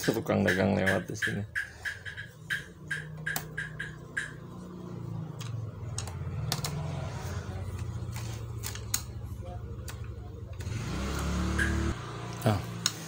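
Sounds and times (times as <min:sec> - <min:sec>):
tools and screws clicking on plastic: 0:00.0 - 0:04.4, 0:05.3 - 0:06.8, 0:07.7 - 0:09.2
passing vehicle engine hum: 0:01.8 - 0:13.0.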